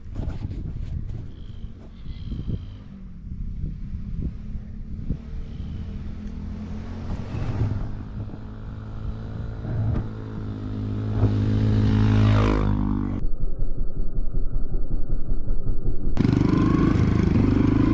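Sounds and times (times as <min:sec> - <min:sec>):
motorcycle engine running: 0:14.3 - 0:17.9.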